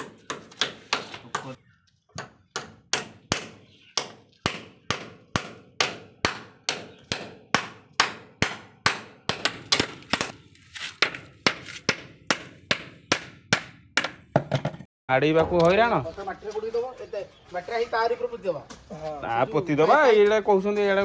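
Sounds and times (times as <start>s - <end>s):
hand tool striking hard object: 2.2s - 10.4s, 11.0s - 14.8s.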